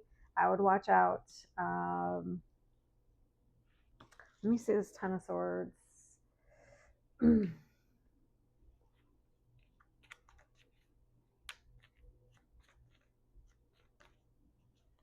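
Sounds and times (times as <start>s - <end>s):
cards clicking and tapping: 9.6s - 15.0s.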